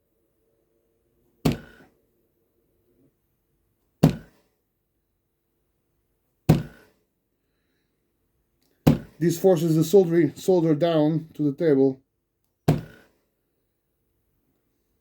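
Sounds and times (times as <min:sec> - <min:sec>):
circuit board thunking on tabletop: 0:01.5 - 0:01.9, 0:04.0 - 0:04.4, 0:06.5 - 0:06.9, 0:08.9 - 0:09.2, 0:12.7 - 0:13.1.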